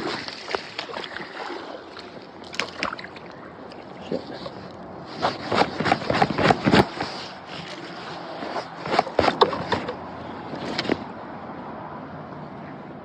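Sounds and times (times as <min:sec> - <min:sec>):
river water running: 0:00.0 - 0:13.0
sharp clicks and knocks: 0:08.8 - 0:10.0.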